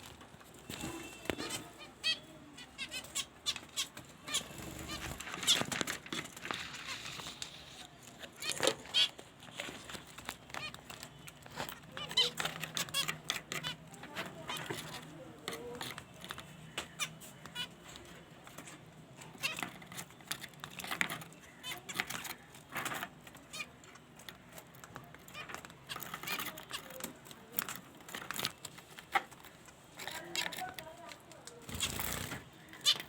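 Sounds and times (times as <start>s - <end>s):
bird calls: 0.6s - 18.2s, 31.7s - 33.0s
birds pecking clicks and taps: 2.8s - 33.0s.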